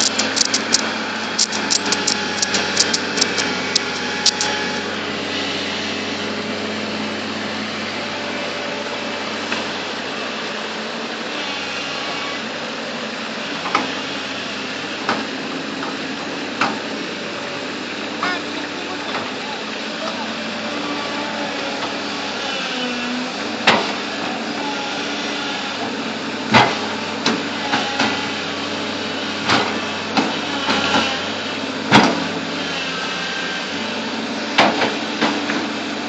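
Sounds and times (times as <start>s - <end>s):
sharp metallic clicks and knocks: 0.0s - 4.5s
bulldozer diesel engine running: 0.0s - 36.0s.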